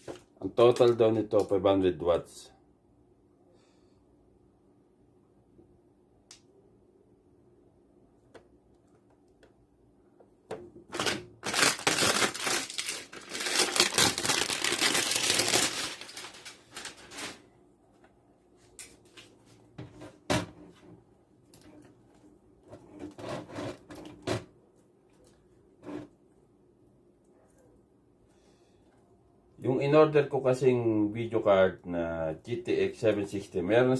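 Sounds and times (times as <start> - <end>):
crackling and rustling: 10.8 - 26.2.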